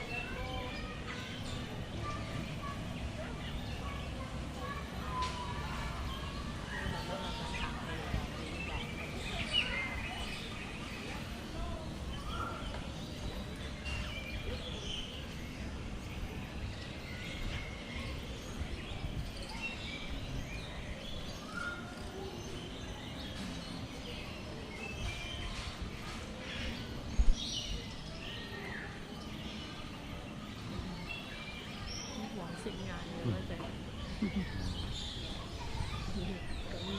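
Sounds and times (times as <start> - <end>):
birds chirping: 0.0 - 36.9.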